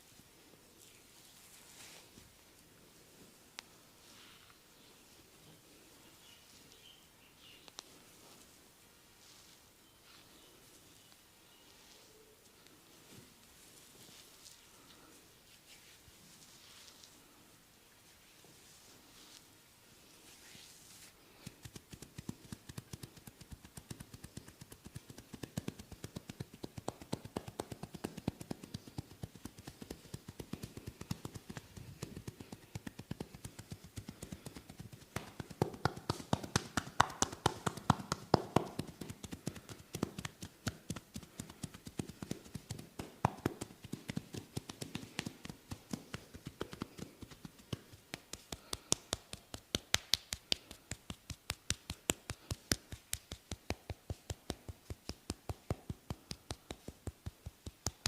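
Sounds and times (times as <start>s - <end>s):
hands tapping on skin: 21.4s - 58.0s.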